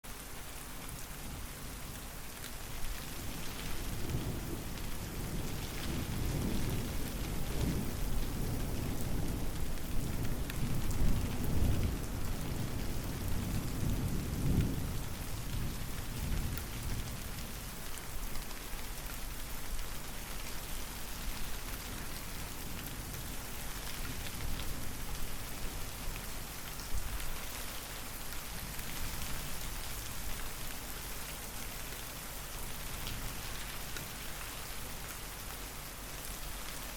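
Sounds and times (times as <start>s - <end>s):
steady rain falling: 0.0s - 36.9s
low rumble of thunder: 2.6s - 30.8s.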